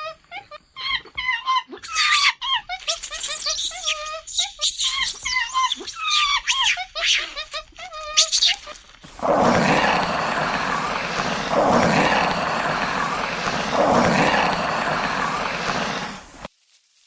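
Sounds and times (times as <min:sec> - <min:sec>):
short high-pitched animal calls: 0:01.8 - 0:09.0
animal rough drawn-out calls: 0:01.8 - 0:16.1.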